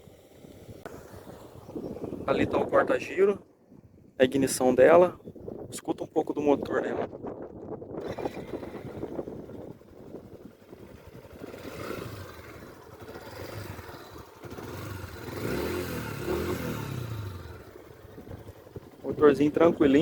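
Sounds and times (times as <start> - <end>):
motorcycle engine idling and revving: 7.1 - 20.0.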